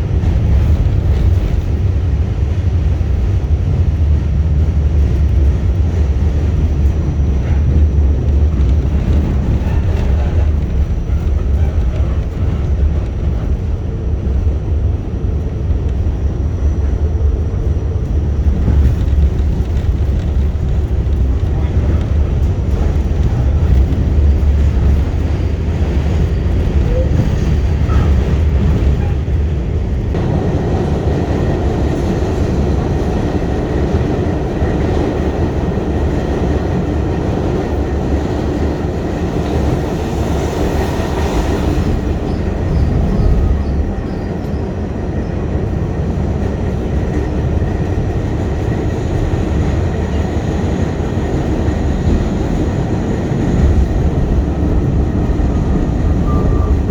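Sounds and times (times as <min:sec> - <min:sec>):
subway train rumbling: 0:00.0 - 0:56.9.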